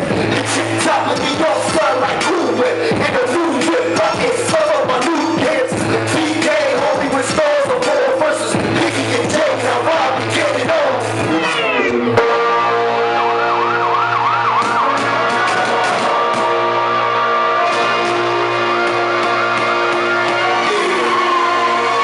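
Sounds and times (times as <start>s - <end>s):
hip-hop beat with synth notes: 0.0s - 22.0s
wavering siren-like wail: 12.2s - 22.0s.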